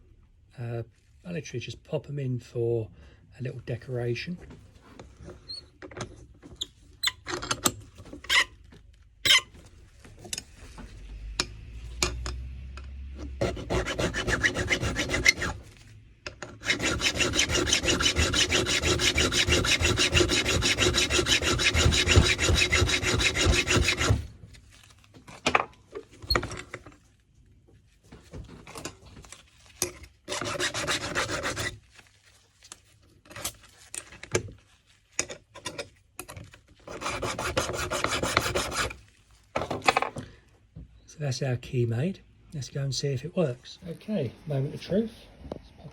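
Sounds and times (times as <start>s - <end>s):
key blank being cut: 16.6s - 24.3s.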